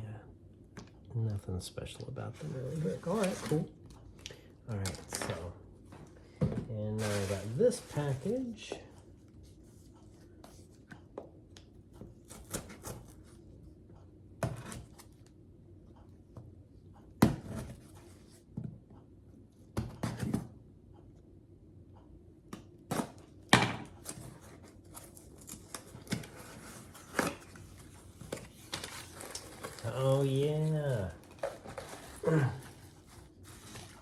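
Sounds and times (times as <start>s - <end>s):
packaging rustling and tearing: 24.0s - 34.0s.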